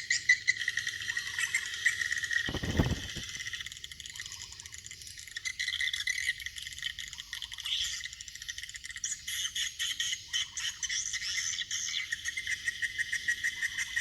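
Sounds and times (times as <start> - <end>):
birds twittering: 2.3 - 5.1.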